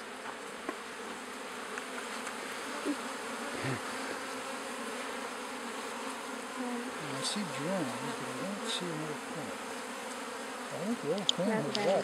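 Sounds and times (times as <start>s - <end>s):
bees buzzing: 0.0s - 12.0s.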